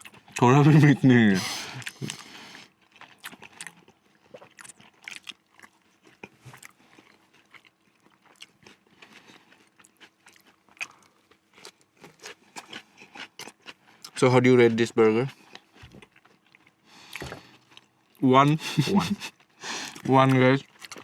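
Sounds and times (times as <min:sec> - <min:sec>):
person chewing crunchy food: 0:00.0 - 0:14.2, 0:15.0 - 0:21.0
mouth sounds: 0:01.1 - 0:02.3, 0:18.2 - 0:20.1.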